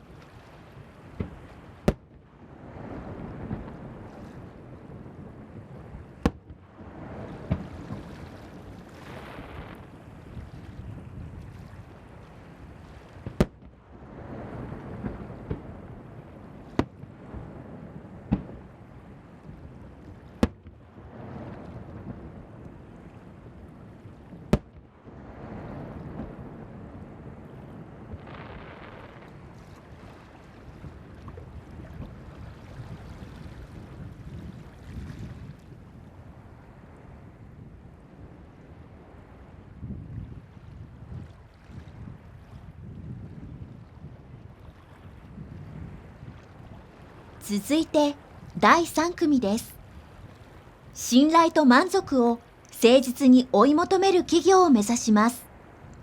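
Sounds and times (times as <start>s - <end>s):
wind on microphone: 0.0s - 24.5s, 25.1s - 47.4s.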